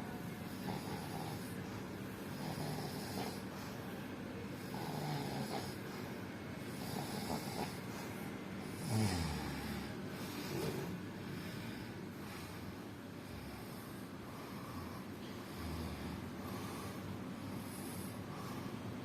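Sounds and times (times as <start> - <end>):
person snoring: 0.5 - 1.6, 2.3 - 3.5, 4.6 - 6.0, 6.8 - 8.0, 8.6 - 12.6.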